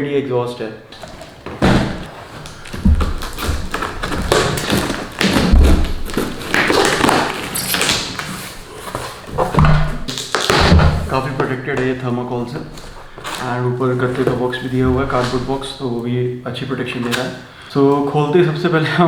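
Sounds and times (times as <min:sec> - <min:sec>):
cardboard scraping and rustling: 0:00.9 - 0:18.6
box thumping down: 0:01.0 - 0:11.3.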